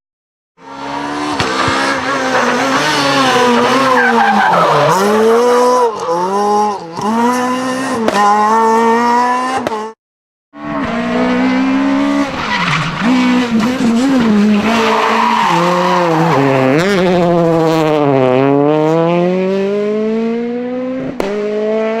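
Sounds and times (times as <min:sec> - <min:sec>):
rally car engine revving: 0:00.6 - 0:10.0, 0:10.6 - 0:22.0.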